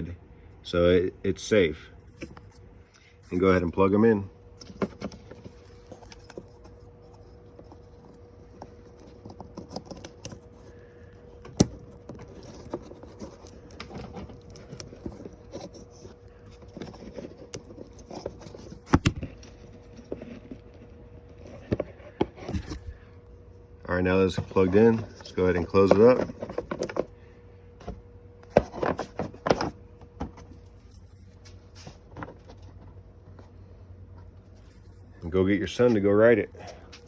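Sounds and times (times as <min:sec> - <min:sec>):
small scrapes and rattles: 0:04.5 - 0:23.0, 0:24.2 - 0:35.1.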